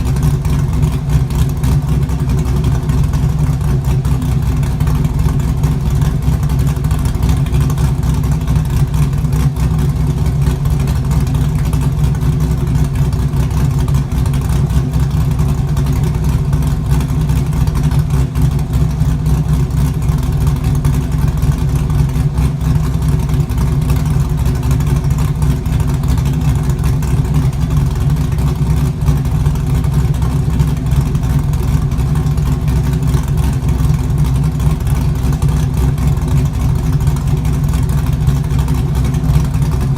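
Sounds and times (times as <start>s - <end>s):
car engine idling: 0.0s - 39.9s.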